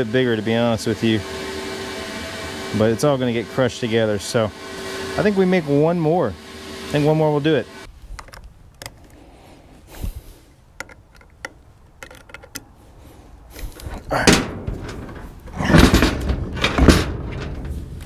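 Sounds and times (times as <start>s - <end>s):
clunks and rattles of tools: 10.8s - 12.8s, 13.5s - 18.0s.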